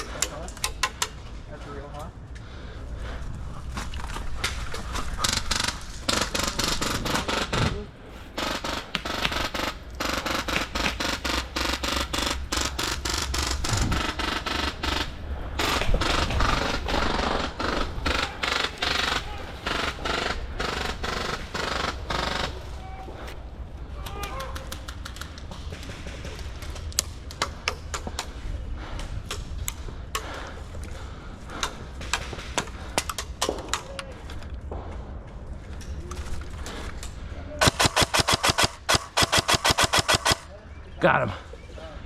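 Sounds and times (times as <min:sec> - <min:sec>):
airsoft guns firing rapidly: 0:04.8 - 0:22.8, 0:37.6 - 0:40.5.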